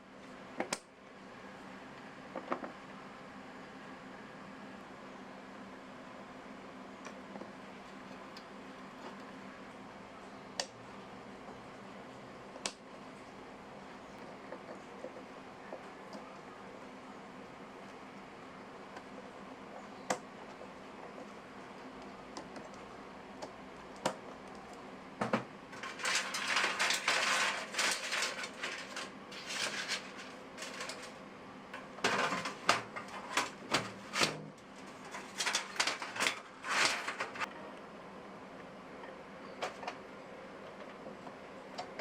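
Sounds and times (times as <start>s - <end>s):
low steady hum: 0.0s - 42.0s
clattering and rustling: 25.2s - 31.2s, 31.8s - 37.5s.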